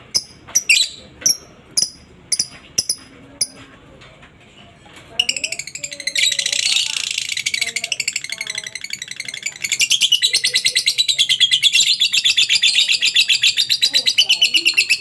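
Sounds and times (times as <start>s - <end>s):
lovebird chattering trill: 5.2s - 15.0s.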